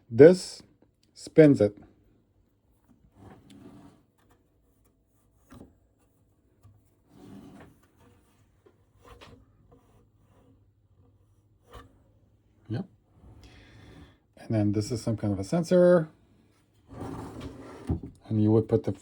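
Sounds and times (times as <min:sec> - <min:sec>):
soft rubs and light knocks: 0:02.5 - 0:13.4.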